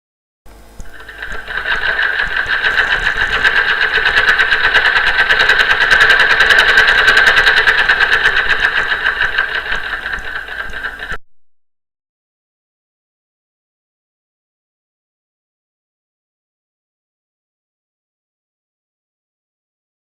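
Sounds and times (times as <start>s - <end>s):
sewing machine stitching: 0.8s - 11.2s.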